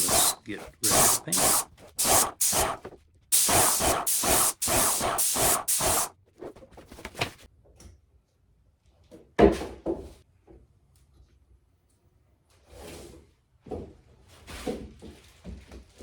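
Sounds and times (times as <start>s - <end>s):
paint sprayer hissing bursts: 0.0s - 6.1s.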